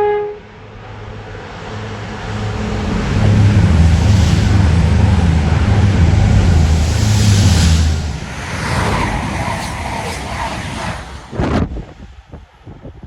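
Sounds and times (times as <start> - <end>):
two-tone train horn: 0.0 - 0.6
diesel train engines droning: 0.0 - 11.5
wheels rushing on rail: 0.0 - 13.0.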